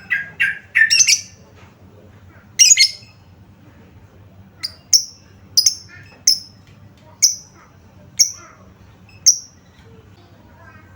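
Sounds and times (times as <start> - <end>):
lovebird shrill chirps: 0.2 - 1.3, 2.6 - 3.1.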